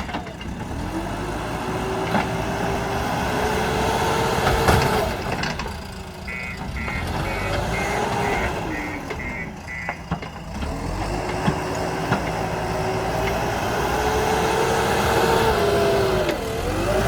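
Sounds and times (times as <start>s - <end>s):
backhoe diesel engine under load: 0.0s - 17.0s.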